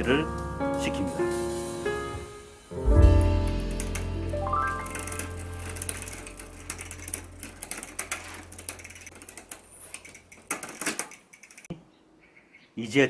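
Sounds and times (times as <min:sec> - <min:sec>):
bicycle chain clicking and rattling: 0:05.8 - 0:11.7.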